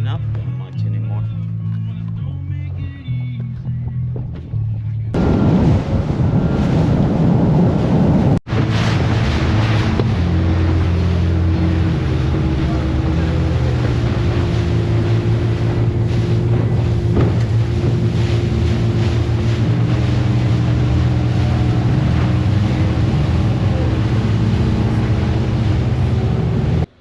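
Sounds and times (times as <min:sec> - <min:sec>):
motorboat engine drone: 0:05.1 - 0:27.0
wind and water rushing: 0:05.2 - 0:26.9.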